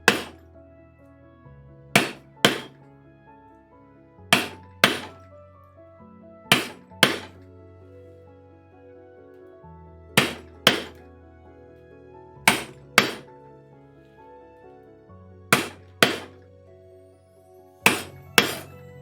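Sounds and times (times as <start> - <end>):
background music: 0.0 - 19.0.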